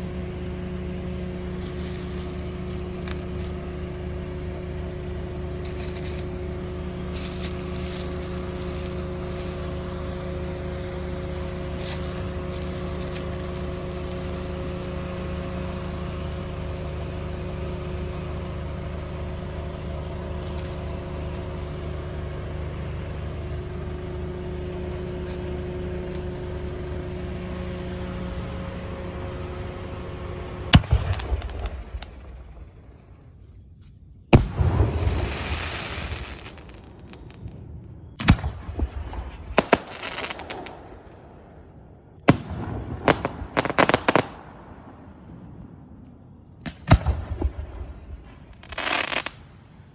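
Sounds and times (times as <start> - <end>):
low mechanical hum: 0.0 - 49.9
firework bang: 30.7 - 32.3, 34.3 - 41.0, 42.3 - 44.9, 46.6 - 49.4
firework cracks: 30.7 - 32.6, 34.3 - 41.1, 42.3 - 44.6, 46.6 - 49.6.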